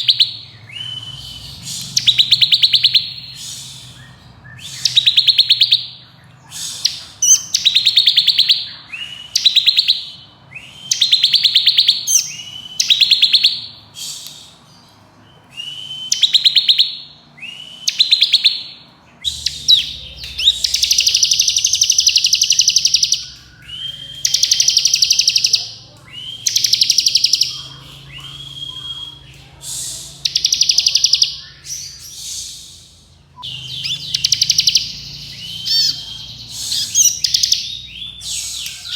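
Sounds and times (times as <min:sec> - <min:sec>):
bird singing buzzing trill: 0:33.4 - 0:38.5.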